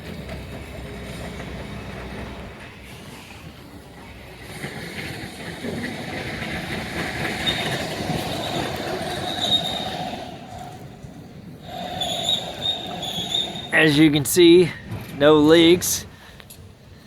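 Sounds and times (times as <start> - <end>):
excavator machinery noise: 0.0 - 15.4
high metallic squeal: 7.2 - 14.1.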